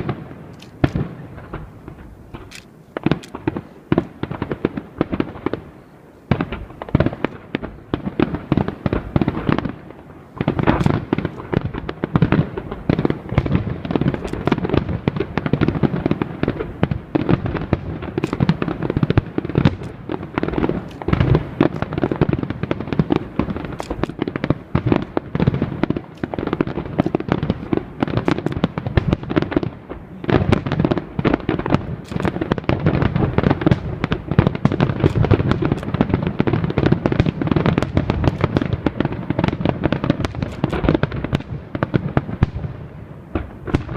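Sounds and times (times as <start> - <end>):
fireworks crackling: 0.0 - 43.9
firework shell bursts: 23.4 - 25.3.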